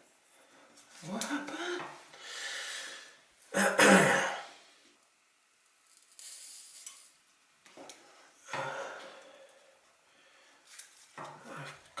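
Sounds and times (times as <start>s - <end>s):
soldering iron sizzling on solder: 5.0s - 8.3s.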